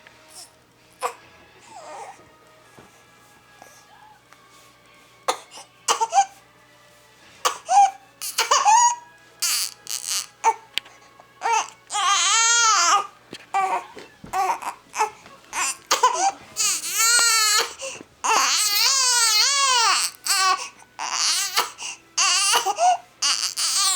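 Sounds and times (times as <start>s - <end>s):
baby crying: 0.3s - 2.2s, 7.4s - 10.7s, 11.4s - 23.9s.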